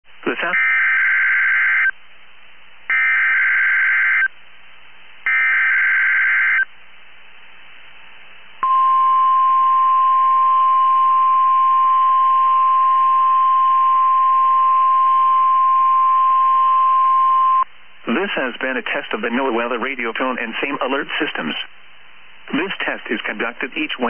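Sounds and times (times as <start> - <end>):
steady warning alarm tone: 0.6 - 1.9, 2.9 - 4.3, 5.3 - 6.7
data burst tones: 5.3 - 6.7.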